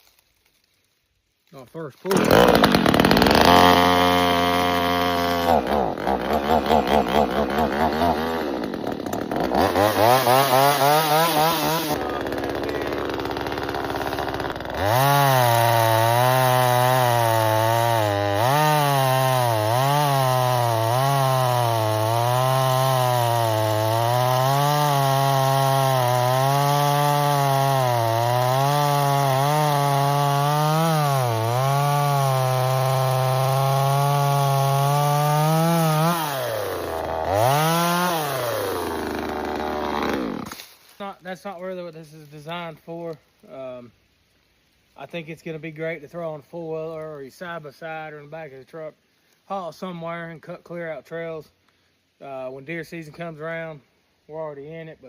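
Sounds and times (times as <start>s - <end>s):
chainsaw revving: 2.0s - 40.8s
chainsaw cutting wood: 2.0s - 41.0s.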